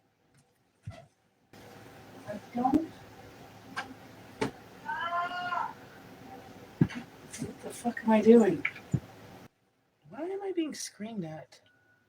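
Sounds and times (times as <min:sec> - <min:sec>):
cat meowing: 0:04.8 - 0:05.8.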